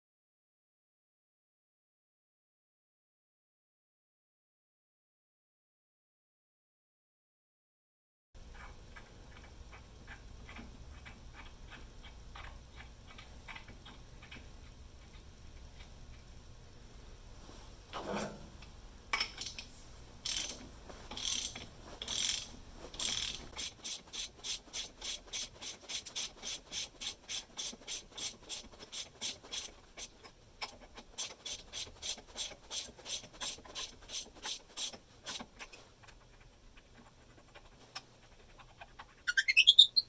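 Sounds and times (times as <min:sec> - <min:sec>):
ratchet wrench clicking: 0:20.2 - 0:20.6, 0:21.2 - 0:35.6.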